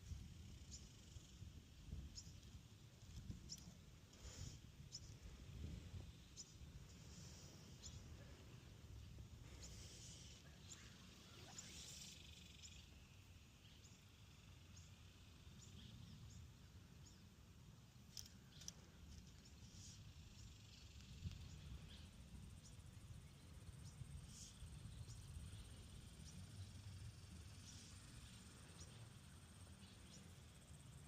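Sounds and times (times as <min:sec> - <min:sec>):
faint high chirps and ticks: 0:00.0 - 0:31.0
low steady rumble: 0:00.0 - 0:31.0.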